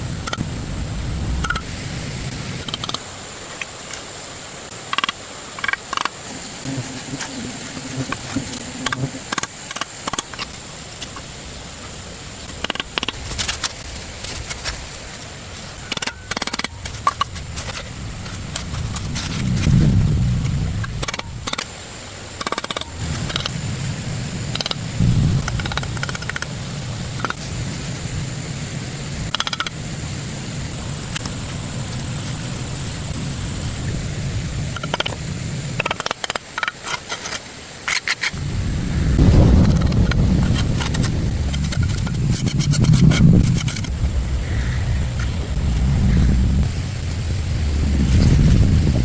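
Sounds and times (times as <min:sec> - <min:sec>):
faint steady hiss: 0:00.0 - 0:49.0
low rumble: 0:17.5 - 0:21.4, 0:38.4 - 0:49.0.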